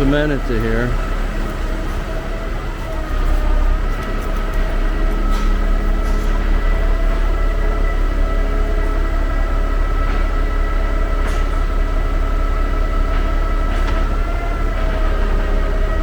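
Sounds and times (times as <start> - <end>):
pump truck engine rumble: 0.0 - 16.0.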